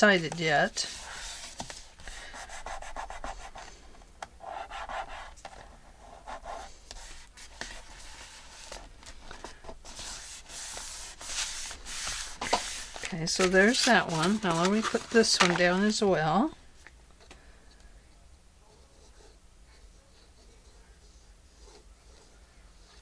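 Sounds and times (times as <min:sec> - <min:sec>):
hands rubbing paper: 0:06.5 - 0:16.5.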